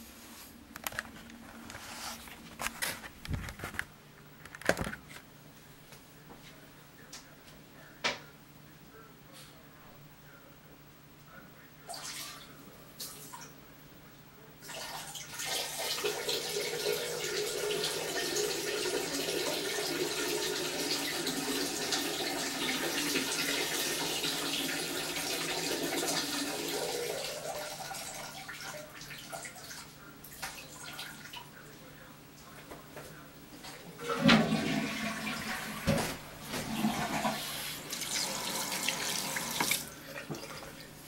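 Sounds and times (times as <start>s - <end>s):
man urinating into toilet: 14.7s - 31.4s, 34.0s - 40.9s.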